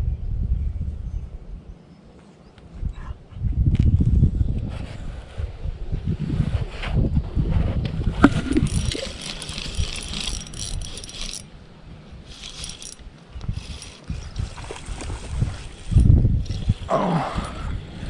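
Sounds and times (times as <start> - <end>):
wind noise on microphone: 0.0 - 1.8, 2.6 - 18.0
fishing reel whirring and clicking: 8.2 - 11.5, 12.3 - 16.9.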